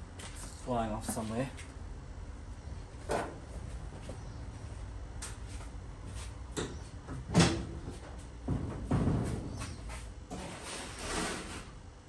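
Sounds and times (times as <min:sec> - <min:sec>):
low steady hum: 0:00.0 - 0:12.0
items knocking and clunking: 0:06.6 - 0:09.8.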